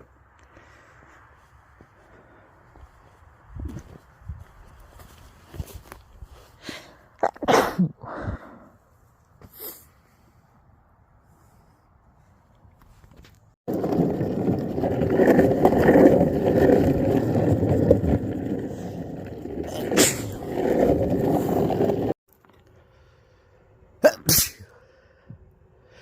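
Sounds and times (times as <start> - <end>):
skateboard wheels rolling on pavement: 0.1 - 6.6, 12.8 - 22.7.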